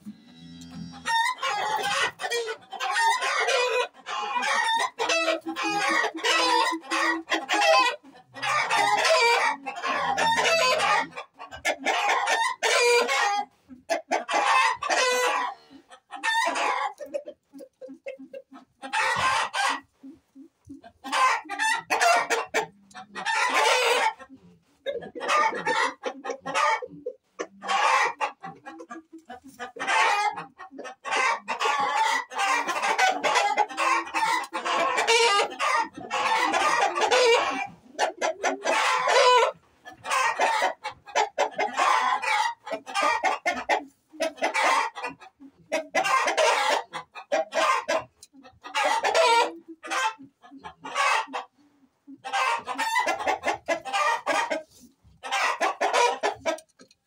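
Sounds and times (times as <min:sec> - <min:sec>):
roosters crowing: 0:00.0 - 0:13.4, 0:14.2 - 0:17.0, 0:21.1 - 0:24.2, 0:31.3 - 0:43.6, 0:55.3 - 0:56.6
chickens clucking: 0:00.0 - 0:57.0.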